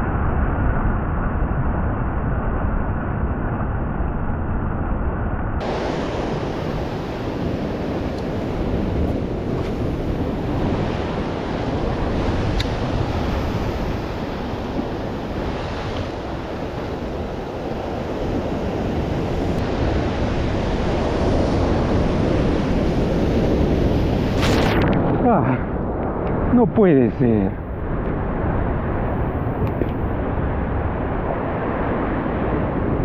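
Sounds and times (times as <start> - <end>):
wind buffeting microphone: 0.0 - 33.0
surf breaking over rocks: 5.6 - 25.6.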